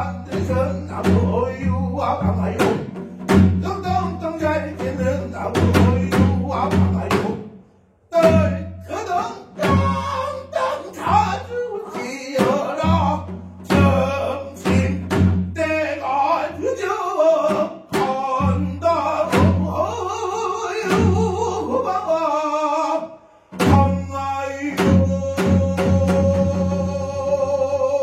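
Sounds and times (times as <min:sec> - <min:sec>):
wavering singing voice: 0:00.0 - 0:03.0, 0:08.1 - 0:28.0
plucked strings: 0:00.0 - 0:07.5, 0:08.2 - 0:16.8
sharp drum strokes: 0:00.0 - 0:07.5, 0:12.3 - 0:15.9.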